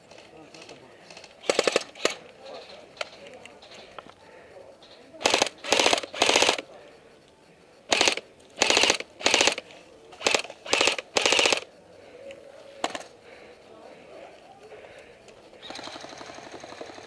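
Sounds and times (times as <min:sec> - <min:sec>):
airsoft gun bursts: 0:00.0 - 0:03.9, 0:04.8 - 0:06.7, 0:07.9 - 0:11.7, 0:15.6 - 0:17.0.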